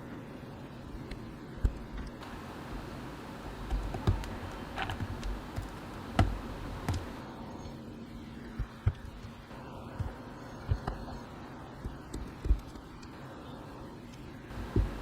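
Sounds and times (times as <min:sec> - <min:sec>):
keyboard parts clicking and tapping: 0:03.6 - 0:07.2, 0:11.8 - 0:13.2.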